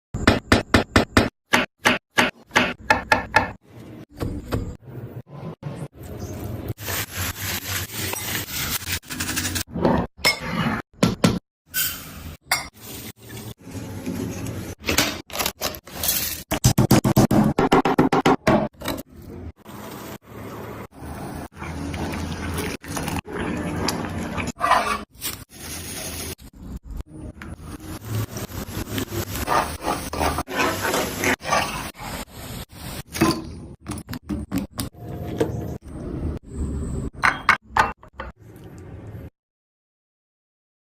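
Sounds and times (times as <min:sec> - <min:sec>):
scraping and rubbing of food: 0:28.8 - 0:32.2.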